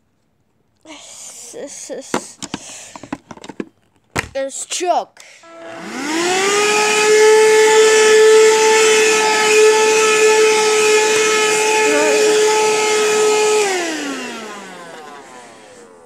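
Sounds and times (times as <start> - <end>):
vacuum cleaner motor whining: 5.4 - 16.0.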